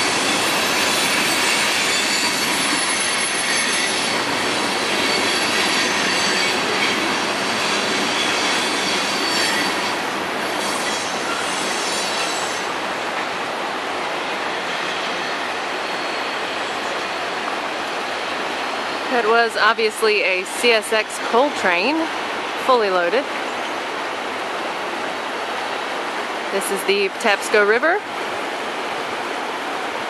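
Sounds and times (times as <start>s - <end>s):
wheels squealing on rail: 0.0s - 22.2s
train cars rumbling past: 0.0s - 30.0s.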